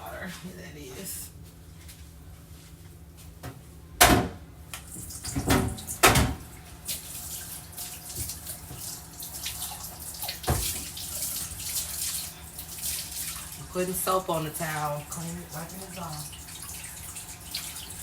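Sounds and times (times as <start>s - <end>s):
tap running water into sink: 5.0s - 18.0s.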